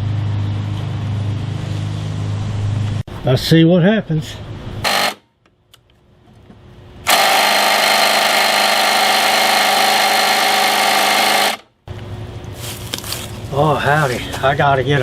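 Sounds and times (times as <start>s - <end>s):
impact wrench hammering: 4.8s - 5.2s, 7.1s - 11.7s.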